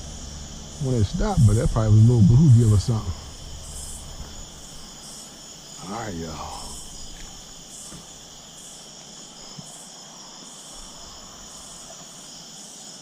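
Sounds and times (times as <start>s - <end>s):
insect calling in even pulses: 0.0s - 9.8s
crickets trilling: 0.0s - 13.0s.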